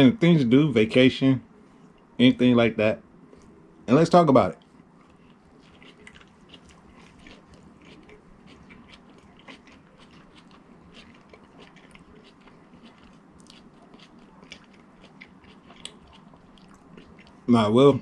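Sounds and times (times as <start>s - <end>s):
person chewing food: 4.6s - 17.5s.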